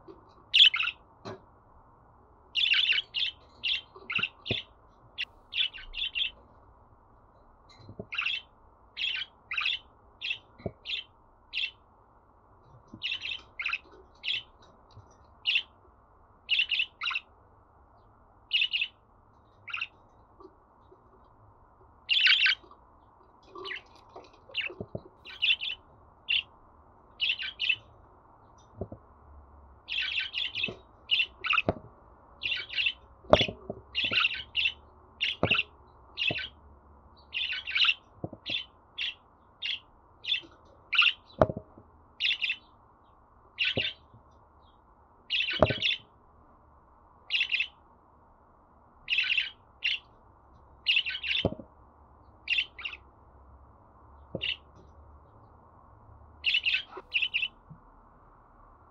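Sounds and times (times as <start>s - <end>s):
budgerigar chirping: 0.5s - 1.0s, 2.6s - 6.4s, 8.1s - 11.8s, 13.0s - 14.5s, 15.4s - 15.7s, 16.5s - 17.3s, 18.5s - 19.0s, 19.6s - 20.0s, 22.1s - 22.6s, 24.5s - 26.5s, 27.2s - 27.9s, 29.9s - 31.7s, 32.4s - 36.6s, 37.2s - 41.4s, 42.2s - 42.7s, 43.6s - 44.1s, 45.3s - 46.1s, 47.3s - 47.8s, 49.1s - 50.1s, 50.8s - 51.5s, 52.4s - 53.1s, 54.4s - 54.7s, 56.4s - 57.6s.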